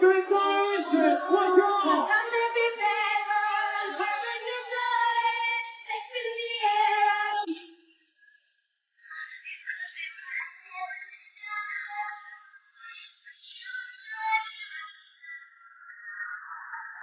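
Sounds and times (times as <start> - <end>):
high voice singing: 0.0 - 7.6.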